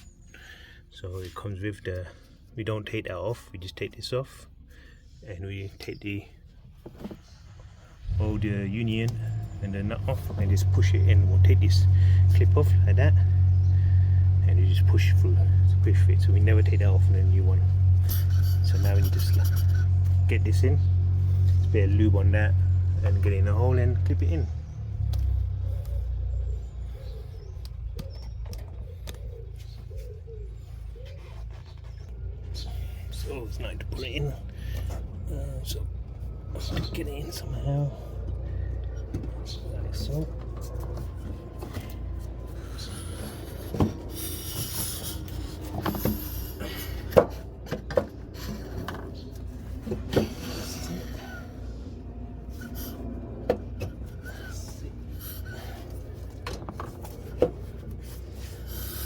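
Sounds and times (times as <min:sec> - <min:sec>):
low rumble: 0:07.4 - 0:29.1, 0:31.4 - 0:58.6
pigeon cooing: 0:24.6 - 0:33.5, 0:36.3 - 0:56.5.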